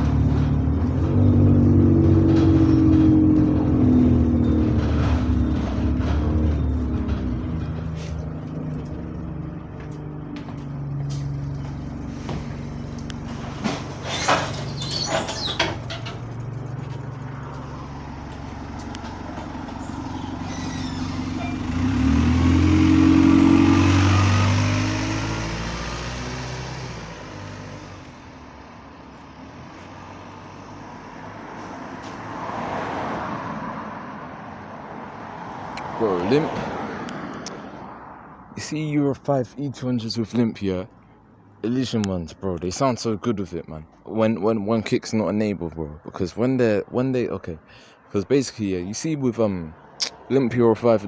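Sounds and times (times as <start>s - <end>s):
diesel bus engine: 0.0s - 51.0s
high squeaks: 0.1s - 9.4s, 10.8s - 22.7s.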